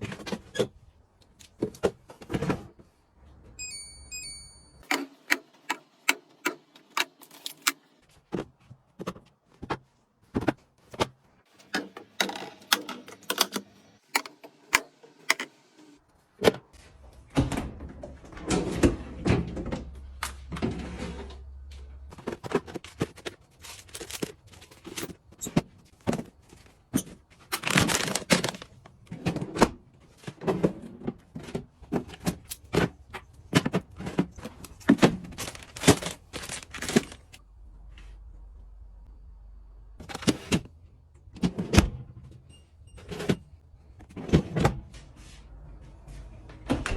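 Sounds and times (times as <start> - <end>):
packaging rustling: 23.1 - 24.9, 27.6 - 29.0, 34.6 - 37.4.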